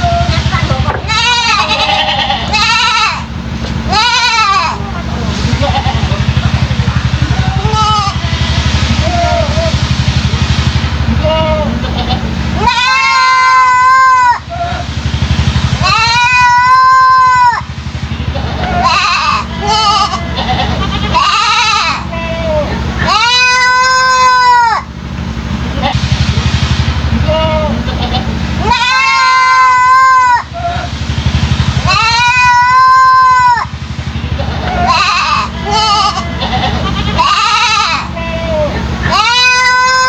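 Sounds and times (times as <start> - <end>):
goat kid bleating: 0.0 - 3.3, 3.9 - 4.8, 5.5 - 6.2, 7.3 - 9.7, 11.2 - 14.8, 15.8 - 17.6, 18.3 - 24.9, 27.3 - 30.9, 31.8 - 33.7, 34.3 - 40.0
steady low rumble: 0.0 - 40.0.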